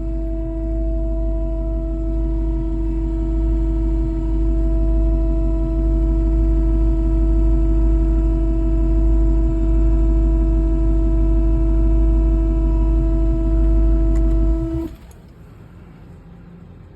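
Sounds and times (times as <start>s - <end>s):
low rumble: 0.0s - 14.9s
loud droning tone: 0.0s - 15.2s
faint hum: 0.0s - 16.9s.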